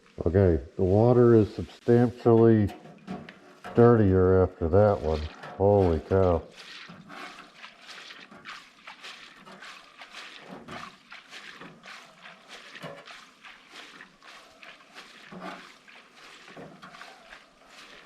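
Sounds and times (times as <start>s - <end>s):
water trickling and splashing: 0.0s - 18.0s
small irregular knocks: 2.7s - 4.0s.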